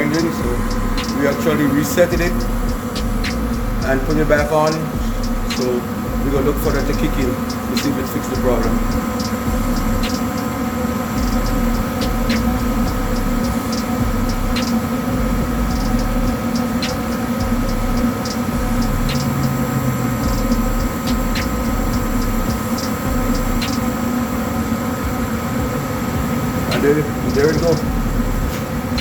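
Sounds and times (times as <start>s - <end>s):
gas furnace humming: 0.0s - 29.0s
faint ticks: 8.9s - 10.5s, 11.2s - 14.9s, 15.6s - 24.0s.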